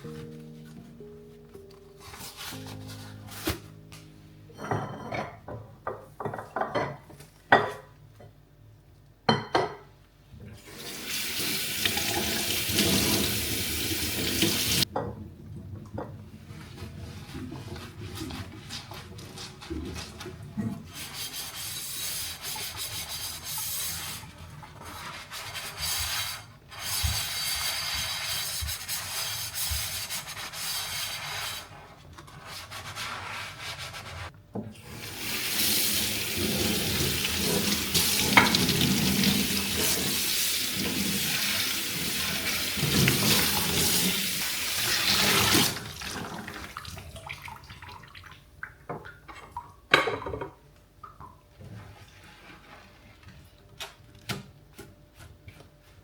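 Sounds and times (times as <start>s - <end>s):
scrubbing a hard surface: 2.0s - 3.6s, 16.5s - 34.3s, 51.7s - 53.4s.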